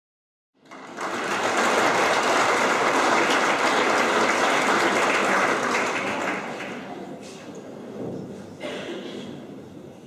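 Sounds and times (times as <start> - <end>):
audience applauding: 0.6 - 6.9.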